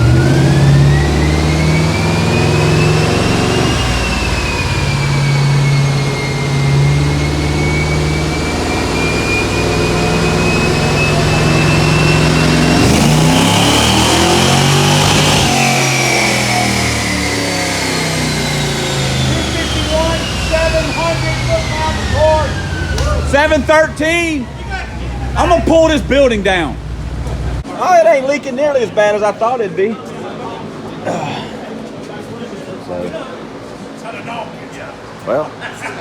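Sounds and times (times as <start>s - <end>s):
car engine whining: 0.0s - 27.7s.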